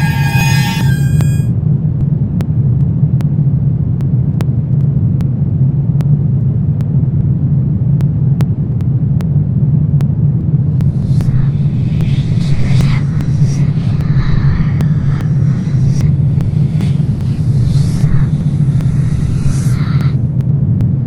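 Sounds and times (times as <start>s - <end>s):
deep rumbling drone: 0.0s - 1.5s, 10.6s - 21.0s.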